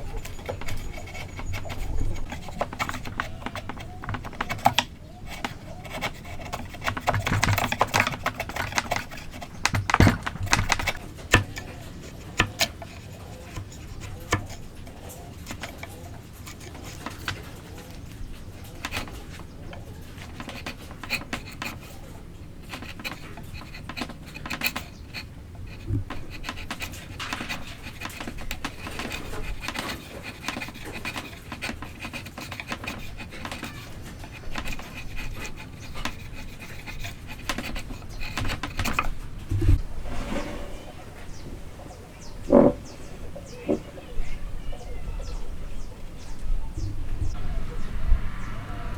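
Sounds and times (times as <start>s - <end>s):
tools scraping timber: 0.0s - 44.1s
taps and knocks on wood: 0.2s - 11.7s, 42.5s - 42.9s.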